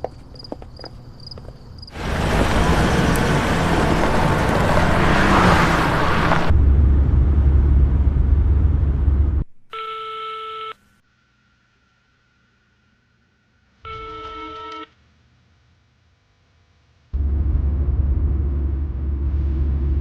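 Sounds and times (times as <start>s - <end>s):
heavy deep rumble: 2.0s - 9.5s, 17.2s - 20.0s
telephone ringing: 13.9s - 14.9s.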